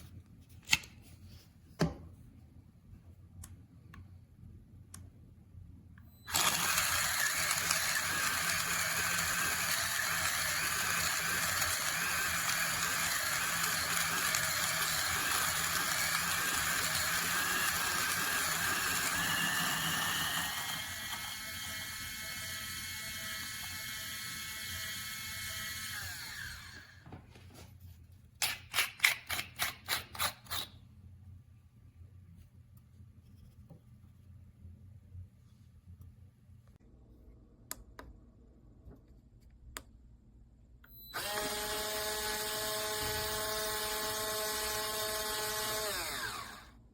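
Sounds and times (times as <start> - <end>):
coffee grinder whirring: 6.3 - 27.0, 41.2 - 46.8.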